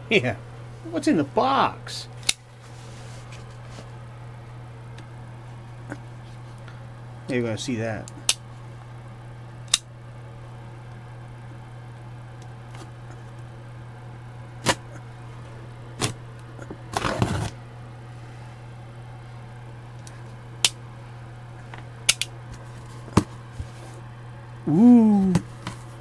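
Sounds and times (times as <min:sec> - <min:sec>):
low hum: 0:00.0 - 0:26.0
cardboard ripping: 0:16.9 - 0:17.6.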